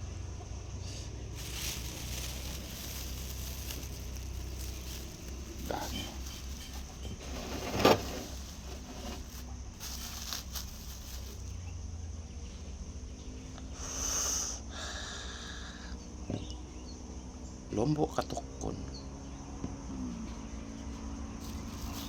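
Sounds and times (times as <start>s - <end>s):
steady low hum: 0.0s - 14.0s
rustling hiss: 0.6s - 11.8s, 13.6s - 15.9s, 21.4s - 22.0s.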